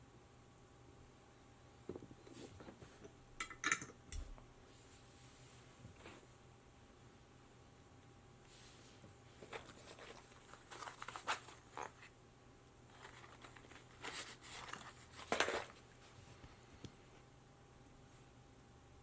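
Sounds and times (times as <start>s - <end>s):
crinkling and clicking handling: 9.4s - 12.1s, 12.9s - 17.0s.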